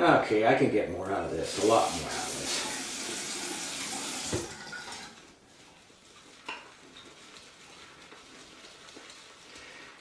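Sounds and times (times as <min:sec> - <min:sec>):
running water hissing: 0:01.3 - 0:05.5.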